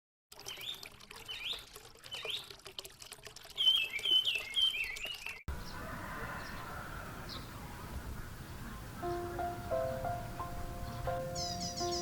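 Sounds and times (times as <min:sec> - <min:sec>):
songbird singing: 0:03.5 - 0:12.0.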